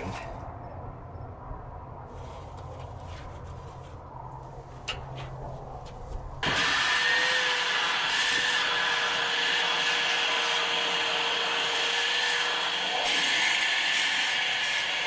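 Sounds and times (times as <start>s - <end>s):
shop vacuum running: 6.4s - 15.0s.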